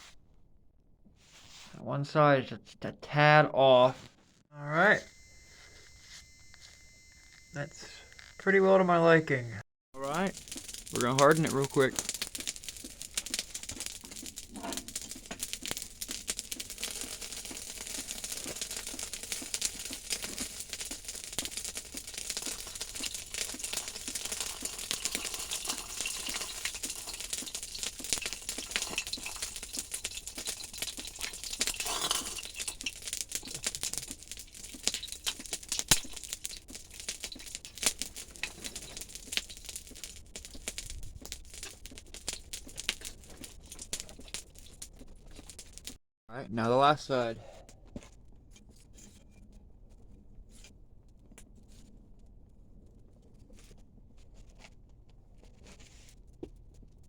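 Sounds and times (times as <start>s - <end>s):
forge fire crackling and hissing: 4.5s - 46.0s.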